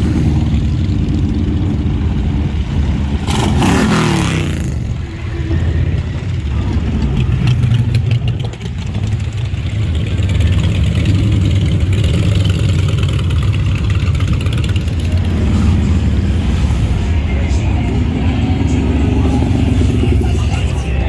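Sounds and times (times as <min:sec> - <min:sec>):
motorcycle engines rumbling: 0:00.0 - 0:21.0.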